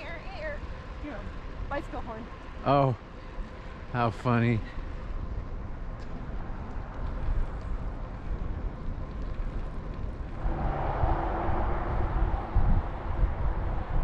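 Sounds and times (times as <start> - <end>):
road rumble: 0.0 - 14.0
wind on microphone: 10.1 - 14.0
loud rushing noise: 10.4 - 14.0.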